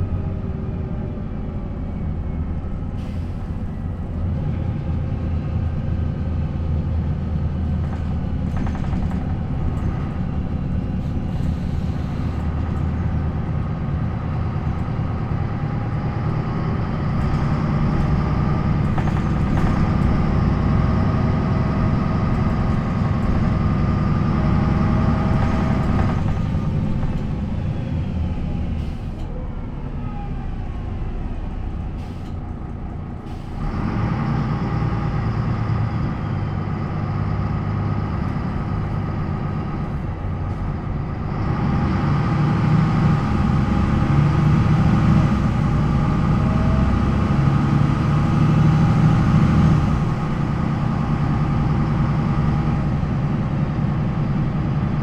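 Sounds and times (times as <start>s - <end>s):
bus diesel engine running: 0.0s - 55.0s.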